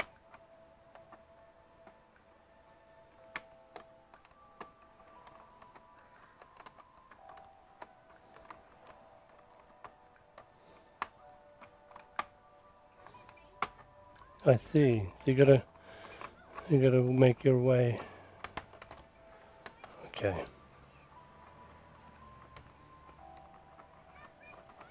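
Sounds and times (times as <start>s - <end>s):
faint background tones: 0.0s - 24.9s
plastic case parts clicking: 3.2s - 20.4s.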